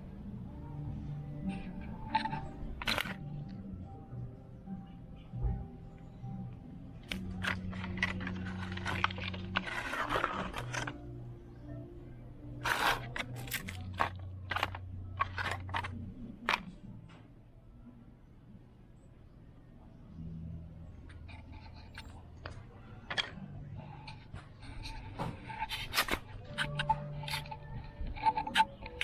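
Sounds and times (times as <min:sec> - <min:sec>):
quiet background music: 0:00.0 - 0:29.0
scraping and clicking handling: 0:07.0 - 0:11.1, 0:12.6 - 0:17.2, 0:21.1 - 0:29.0.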